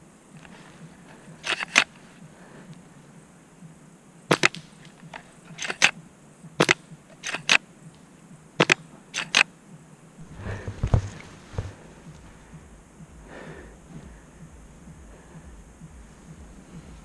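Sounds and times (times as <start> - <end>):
airsoft guns popping: 0.4 - 2.1, 4.3 - 6.0, 6.6 - 9.5, 10.2 - 12.5.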